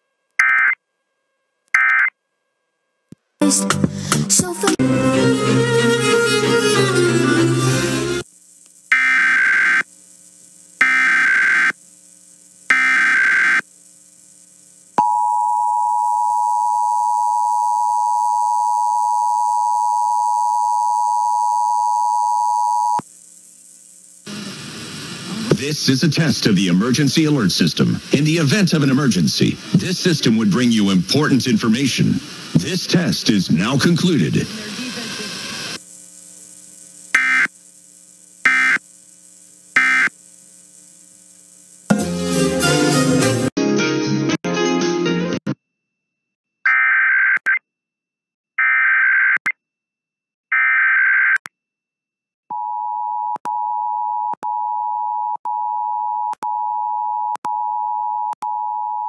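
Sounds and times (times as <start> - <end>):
music: 3.4 - 8.2, 41.9 - 45.6
faint steady hum: 5.4 - 42.0
short digital data bursts: 7.7 - 15.0, 25.6 - 42.0
digital header bursts: 24.3 - 35.9, 37.0 - 37.6, 38.4 - 39.0, 39.7 - 40.2.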